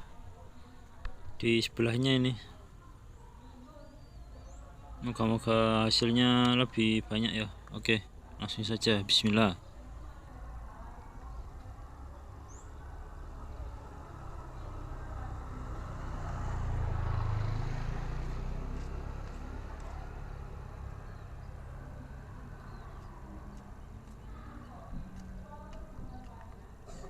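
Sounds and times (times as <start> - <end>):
passing vehicle rumble: 9.6 - 27.0.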